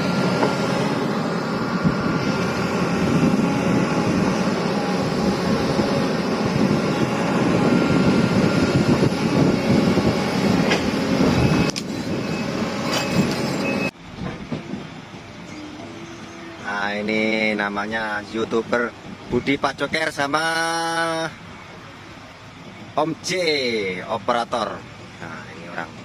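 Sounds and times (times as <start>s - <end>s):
heavy rumbling: 0.0s - 17.8s
excavator diesel engine under load: 0.0s - 26.0s.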